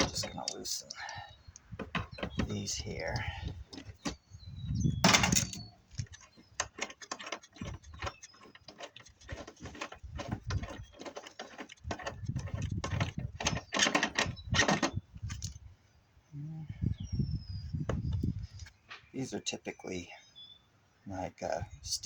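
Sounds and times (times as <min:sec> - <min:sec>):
metal clicks scrapes and knocks: 0:00.0 - 0:04.3, 0:05.0 - 0:15.6
dull handling thuds: 0:01.7 - 0:14.9.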